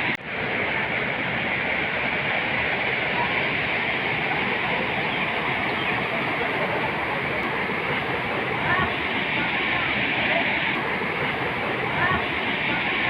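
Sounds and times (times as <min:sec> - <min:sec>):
flood water rushing: 0:00.0 - 0:13.0.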